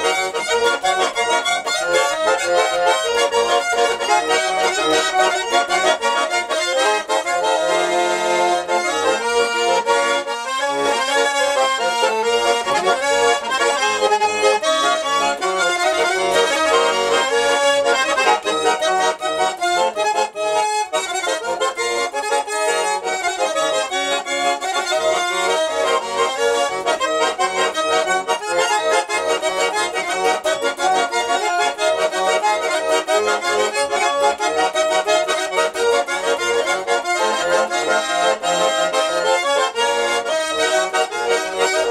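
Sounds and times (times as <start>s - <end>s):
button accordion folk tune: 0.0s - 41.9s.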